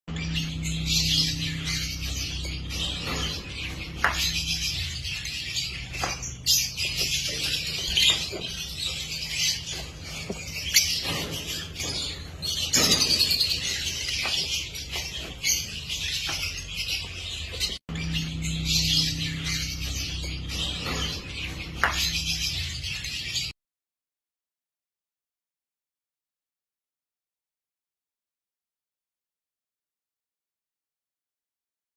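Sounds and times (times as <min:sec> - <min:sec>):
steady low hum: 0:00.1 - 0:23.5
lovebirds chirping: 0:00.1 - 0:23.6.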